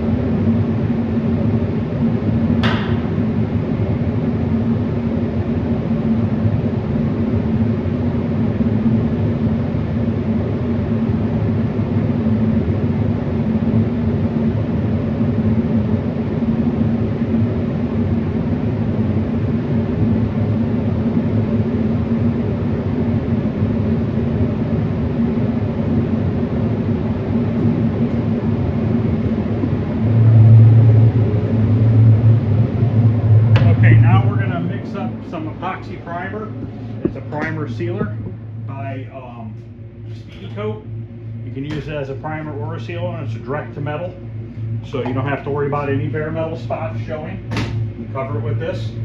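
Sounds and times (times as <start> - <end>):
deep loud hum: 0.0 - 49.0
low mechanical drone: 0.0 - 49.0.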